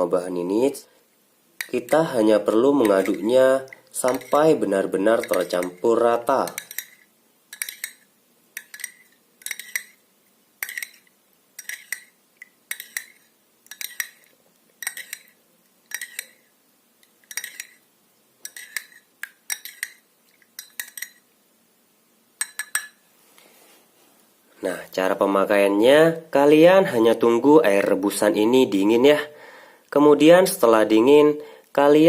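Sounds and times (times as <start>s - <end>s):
spoon clinking in a glass: 2.8s - 4.5s, 5.2s - 5.8s, 6.5s - 10.0s, 10.6s - 15.3s, 15.9s - 16.4s, 17.2s - 17.8s, 18.4s - 20.0s, 20.6s - 21.2s, 22.4s - 23.0s.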